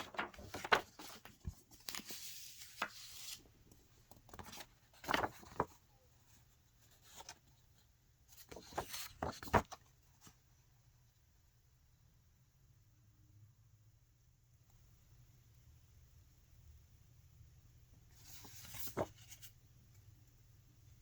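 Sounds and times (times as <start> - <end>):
paper crinkles and taps: 0.0 - 5.8, 8.4 - 9.9
paper sliding rustle: 0.0 - 7.6, 8.3 - 10.4, 18.1 - 19.6.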